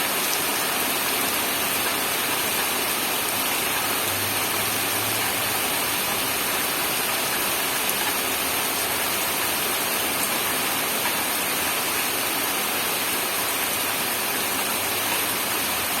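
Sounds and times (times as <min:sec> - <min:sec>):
steady rain hiss: 0:00.0 - 0:16.0.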